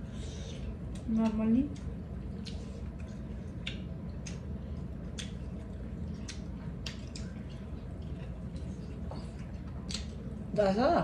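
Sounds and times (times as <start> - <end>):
low room hum: 0.0 - 11.0
wet eating smacks: 1.7 - 10.3.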